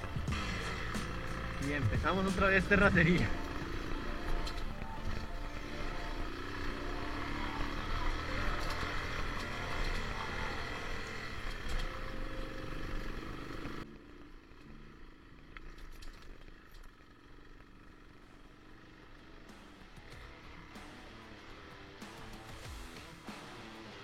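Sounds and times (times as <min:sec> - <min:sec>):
motorcycle engine drone: 0:00.0 - 0:24.0.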